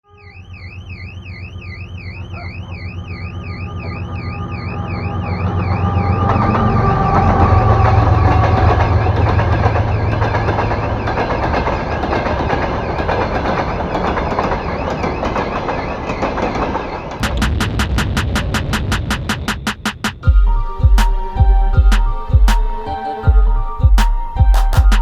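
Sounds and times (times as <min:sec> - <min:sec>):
heavy vehicle engine passing: 0:00.6 - 0:13.2.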